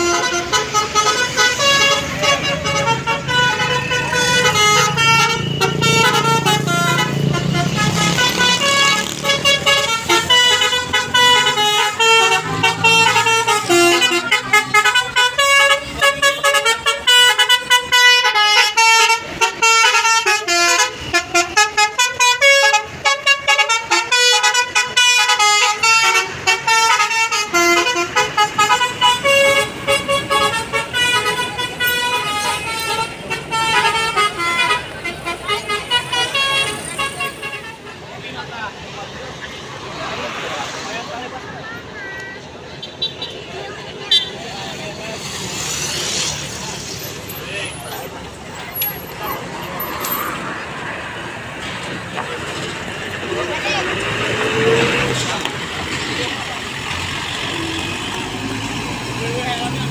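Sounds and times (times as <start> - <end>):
musical air horn melody: 0.0 - 37.9
bus engine rumbling: 0.0 - 59.9.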